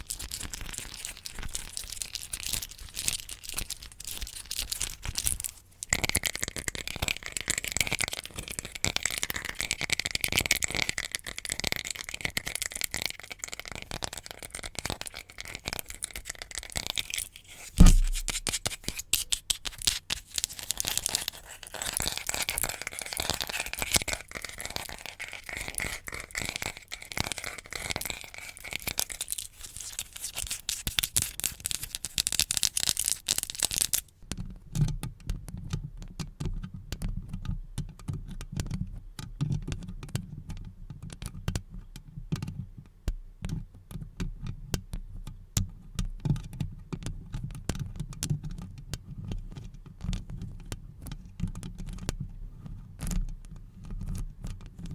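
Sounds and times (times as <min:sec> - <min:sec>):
crackling and crinkling: 0:00.0 - 0:34.1.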